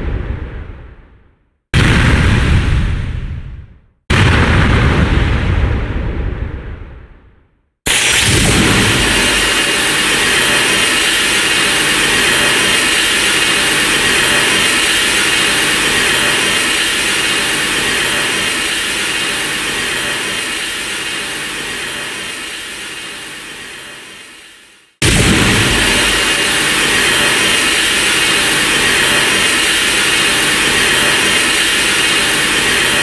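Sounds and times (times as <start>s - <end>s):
jet-like mechanical roar: 7.9s - 33.0s.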